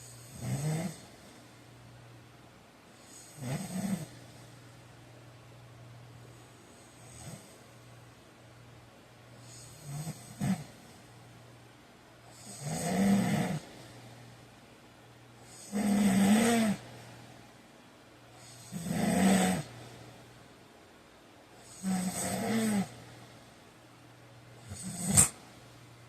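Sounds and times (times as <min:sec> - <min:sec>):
man snoring: 0:00.0 - 0:01.2, 0:03.0 - 0:04.2, 0:06.8 - 0:07.6, 0:09.4 - 0:10.8, 0:12.3 - 0:13.8, 0:15.4 - 0:16.8, 0:18.4 - 0:19.8, 0:21.6 - 0:23.0, 0:24.6 - 0:25.4.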